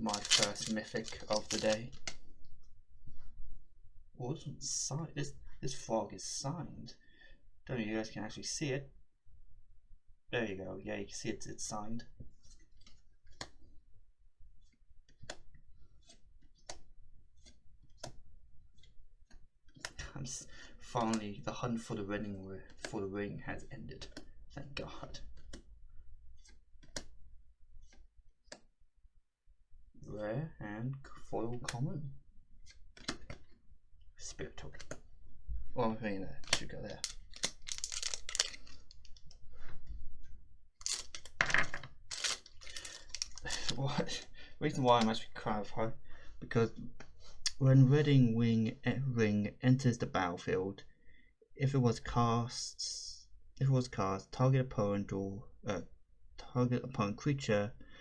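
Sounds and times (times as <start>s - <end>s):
trading cards clicking: 0.0s - 2.2s, 36.4s - 39.2s, 40.8s - 41.4s, 42.1s - 43.8s, 44.8s - 45.2s
card rustles and ticks: 0.0s - 2.3s, 36.3s - 39.4s, 40.8s - 45.2s.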